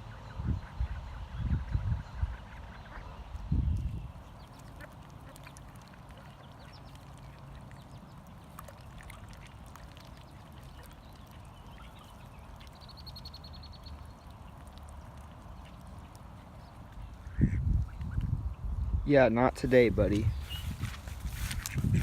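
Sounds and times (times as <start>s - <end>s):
ducks quacking faintly: 0.0s - 3.4s, 4.4s - 12.8s, 14.2s - 18.6s.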